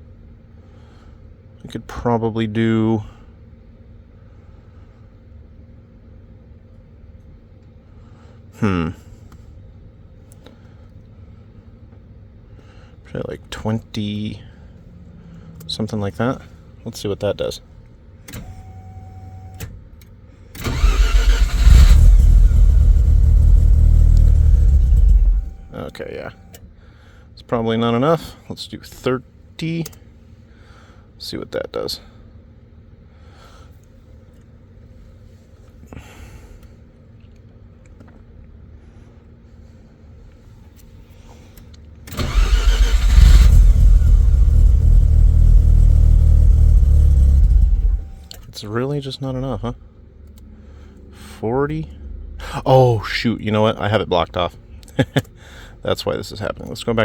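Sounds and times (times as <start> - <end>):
faint steady whine: 0.0 - 57.0
car engine cranking and running: 14.7 - 16.5, 20.5 - 26.6, 42.0 - 48.6
click: 24.1 - 24.4, 29.8 - 30.0, 50.2 - 50.5.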